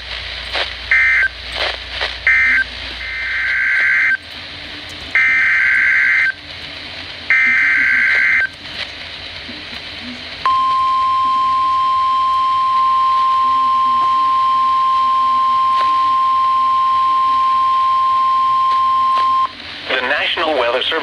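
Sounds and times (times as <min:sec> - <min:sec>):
faint radio hiss: 0:00.0 - 0:21.0
steady warning alert beep: 0:10.5 - 0:19.5.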